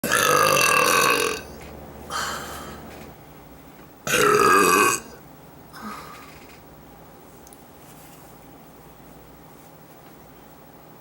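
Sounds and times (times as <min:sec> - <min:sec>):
woman burping: 0:00.0 - 0:01.5, 0:04.1 - 0:05.2, 0:05.8 - 0:06.3.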